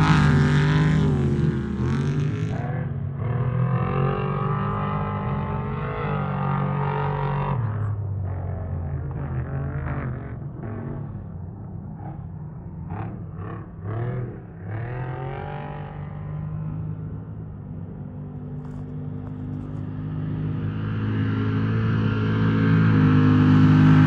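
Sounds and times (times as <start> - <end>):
race vehicle engine revving: 0.0 - 7.5.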